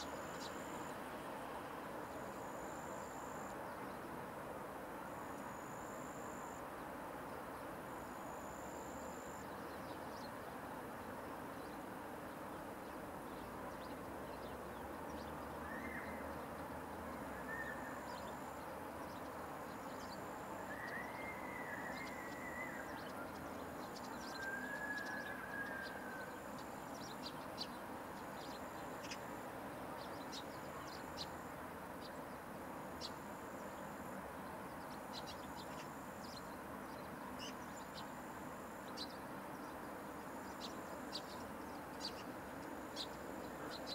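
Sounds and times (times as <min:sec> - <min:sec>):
steady background hiss: 0:00.0 - 0:43.9
faint bird chirps: 0:13.3 - 0:29.4.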